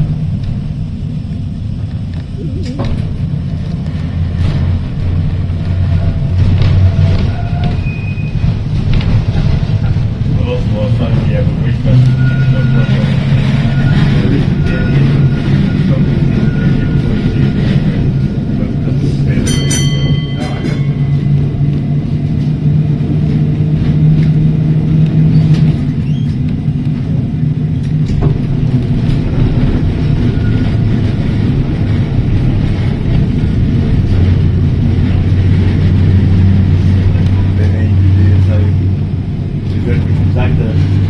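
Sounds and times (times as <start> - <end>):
electric tram running on rails: 0.0 - 41.0
brief high ringing tone: 19.5 - 21.8.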